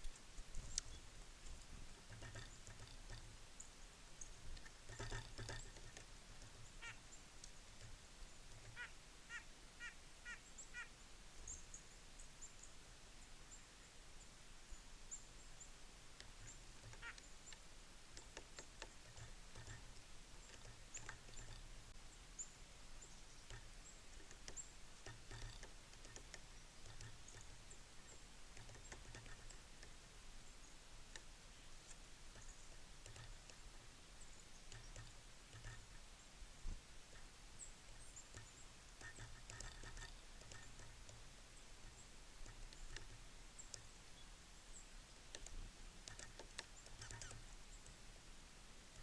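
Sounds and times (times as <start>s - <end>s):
light clicks and ticks: 0.0s - 8.9s, 16.1s - 22.0s, 23.0s - 48.0s
small birds chipping and calling: 0.0s - 49.0s.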